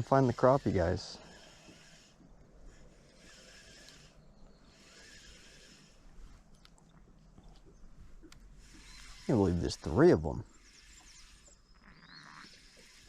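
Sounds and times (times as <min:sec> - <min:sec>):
faint outdoor hiss: 0:00.0 - 0:13.0
faint clicks: 0:02.7 - 0:04.2, 0:06.4 - 0:09.2.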